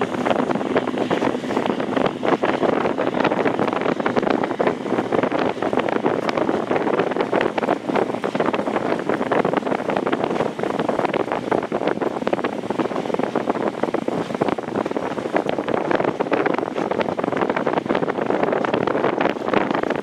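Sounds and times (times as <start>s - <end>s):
rushing splashing water: 0.0s - 20.0s
wind buffeting microphone: 0.0s - 20.0s.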